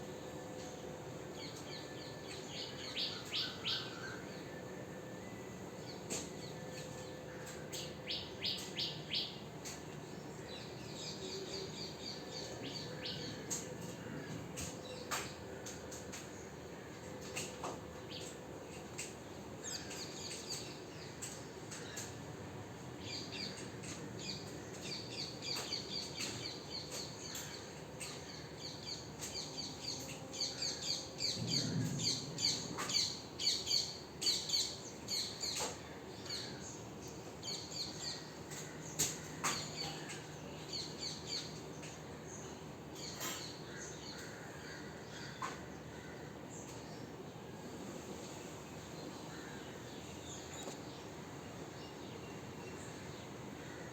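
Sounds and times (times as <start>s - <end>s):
small birds chirping: 23.0s - 47.2s.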